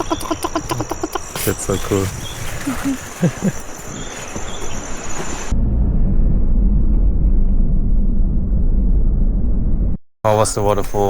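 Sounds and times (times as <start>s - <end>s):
insects chirring: 0.0s - 5.5s
loud steady low rumble: 4.8s - 11.0s.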